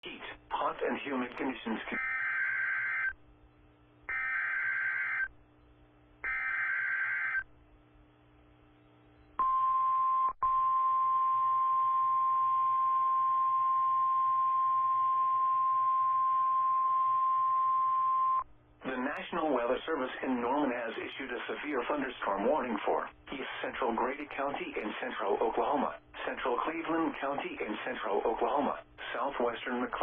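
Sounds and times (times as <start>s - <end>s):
steady warning alarm tone: 2.0s - 3.2s, 4.1s - 5.3s, 6.2s - 7.4s.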